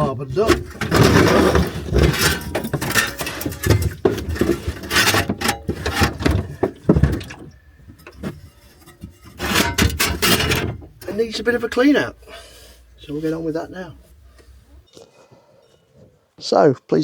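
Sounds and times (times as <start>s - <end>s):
hard objects clattering and knocking: 0.0s - 12.0s.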